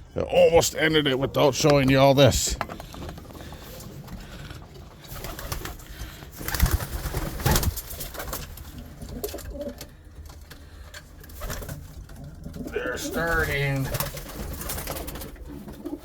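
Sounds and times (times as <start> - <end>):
pigeons cooing: 8.6 - 10.0, 11.4 - 16.0.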